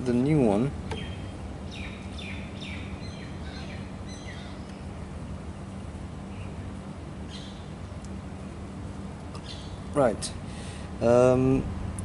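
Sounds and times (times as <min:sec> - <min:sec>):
low background hum: 0:00.0 - 0:12.0
bird chirping: 0:00.9 - 0:04.9, 0:06.3 - 0:06.6, 0:07.3 - 0:07.8, 0:09.4 - 0:09.9.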